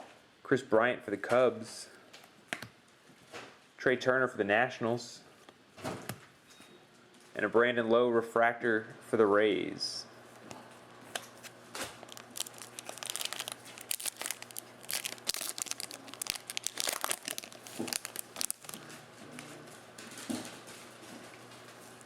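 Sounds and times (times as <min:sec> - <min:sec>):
foil wrapper crinkling and tearing: 0:11.9 - 0:19.0.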